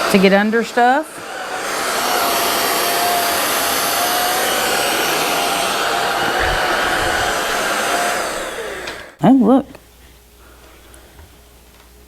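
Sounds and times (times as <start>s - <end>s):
stick vacuum running: 1.2s - 9.2s.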